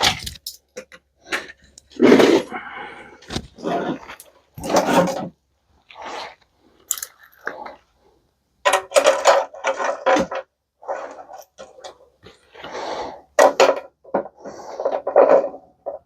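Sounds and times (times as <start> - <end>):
metal parts clattering and rattling: 8.6 - 12.0.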